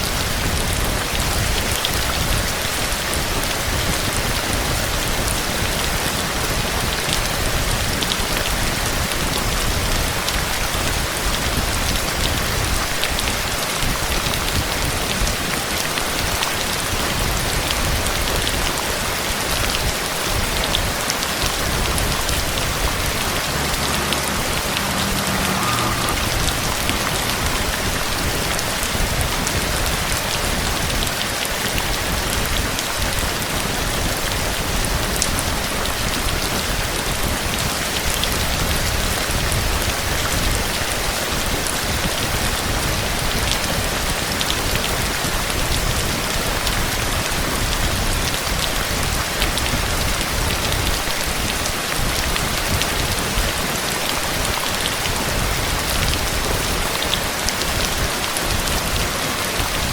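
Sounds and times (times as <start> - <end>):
heavy rain falling: 0.0 - 59.9.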